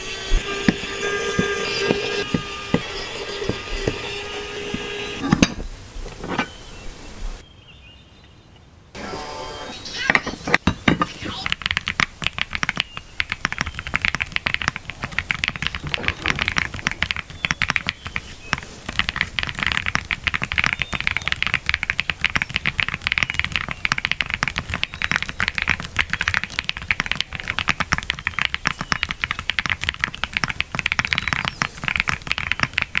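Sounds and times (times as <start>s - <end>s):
mechanical keyboard typing: 11.4s - 18.2s, 18.9s - 33.0s.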